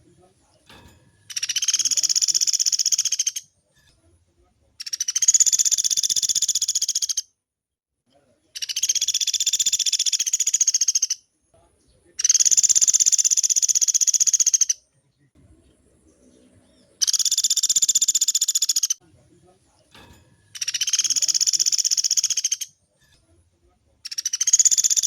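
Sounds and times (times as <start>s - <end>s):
woodpecker calling in rapid trills: 1.3s - 3.4s, 4.8s - 7.2s, 8.6s - 11.2s, 12.2s - 14.8s, 17.0s - 19.0s, 20.6s - 22.8s, 24.0s - 25.0s.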